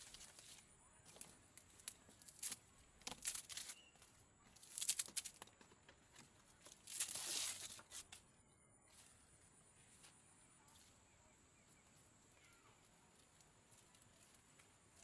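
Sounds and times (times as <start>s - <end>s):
tearing and crinkling: 1.8s - 3.8s, 4.6s - 5.4s, 6.6s - 8.2s.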